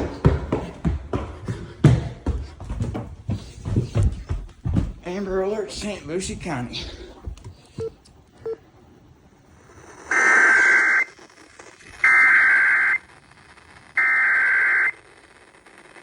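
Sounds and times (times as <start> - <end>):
raspy data tone bursts: 9.6 - 11.3.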